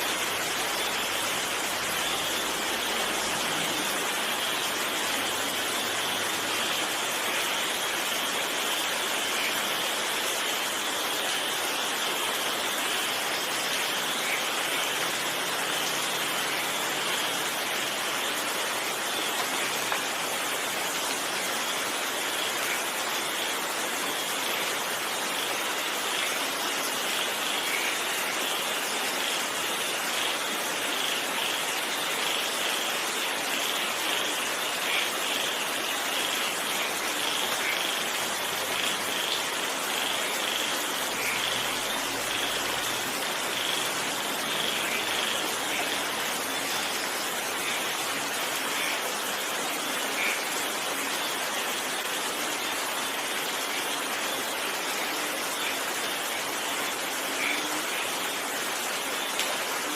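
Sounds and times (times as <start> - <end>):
steady rain hiss: 0.0 - 59.9
raindrop patter: 58.6 - 59.9.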